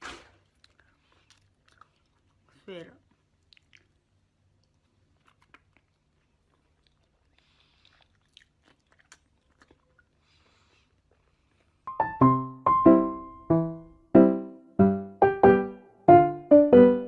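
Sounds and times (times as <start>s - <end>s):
person chewing: 0.0s - 2.5s, 3.1s - 11.8s
soft crunches of brittle snack: 0.0s - 11.8s.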